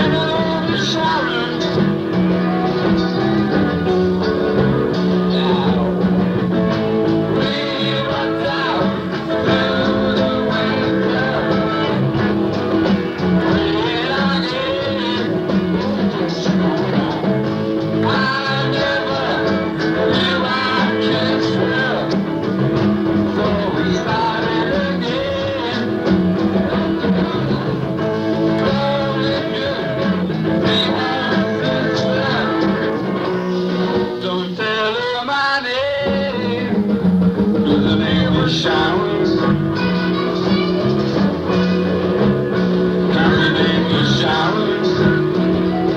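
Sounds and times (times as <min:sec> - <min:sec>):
bass guitar: 0:00.0 - 0:45.9
drums: 0:00.0 - 0:45.9
electric guitar: 0:00.0 - 0:45.9
twelve-string guitar: 0:00.0 - 0:45.9.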